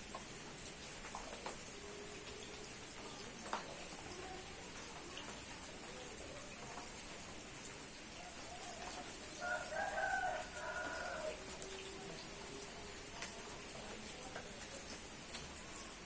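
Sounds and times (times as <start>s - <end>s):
rain falling: 0.0s - 16.0s
rooster crowing: 8.4s - 11.7s.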